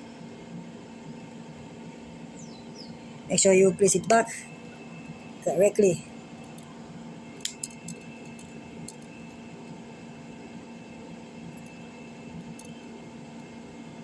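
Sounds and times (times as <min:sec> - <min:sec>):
faint background hum: 0:00.0 - 0:14.0
phone parts clicking: 0:07.4 - 0:09.1.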